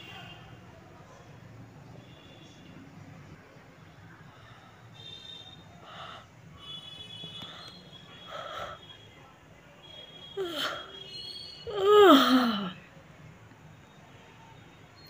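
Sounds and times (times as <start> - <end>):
soft breaths: 3.9 - 9.0
falling moan: 10.4 - 10.9, 11.7 - 12.8
person yawning: 11.7 - 12.8.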